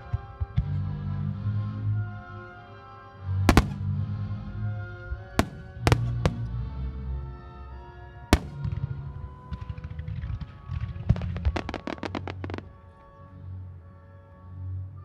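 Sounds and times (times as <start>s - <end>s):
music playing: 0.0s - 9.8s
fireworks bursting: 3.5s - 4.0s, 5.4s - 7.0s, 8.4s - 12.8s.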